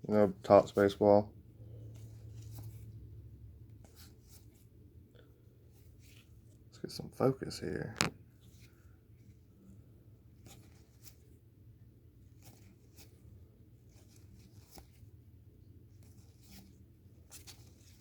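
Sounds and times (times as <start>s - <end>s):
low steady hum: 0.0s - 18.0s
trading cards rustling and clicking: 12.3s - 15.1s, 16.0s - 18.0s.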